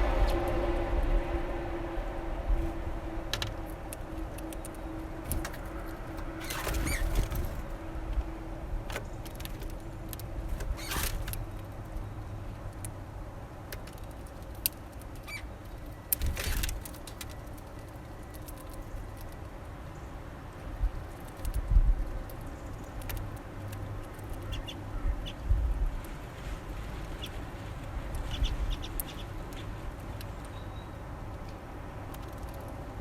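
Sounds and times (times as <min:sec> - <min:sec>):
low rumble: 0:00.0 - 0:06.4
hum: 0:00.0 - 0:13.6
wing flutters: 0:04.2 - 0:07.8
birds tapping: 0:13.7 - 0:25.4, 0:28.0 - 0:32.8.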